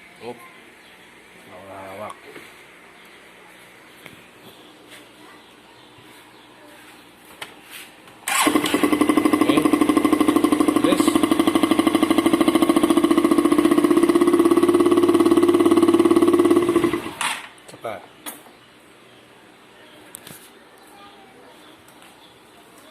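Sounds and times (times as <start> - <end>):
motorcycle engine pulsing: 8.3 - 17.3.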